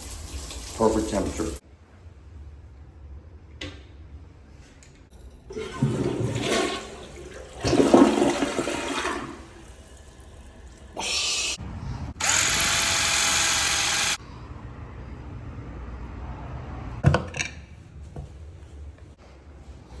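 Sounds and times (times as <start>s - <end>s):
water rushing from a tap in spurts: 0.0s - 1.6s.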